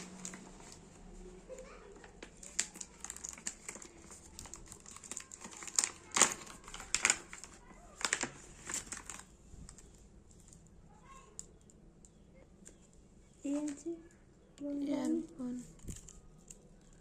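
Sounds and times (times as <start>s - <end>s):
packaging crinkling: 0.0s - 0.8s, 1.9s - 10.6s.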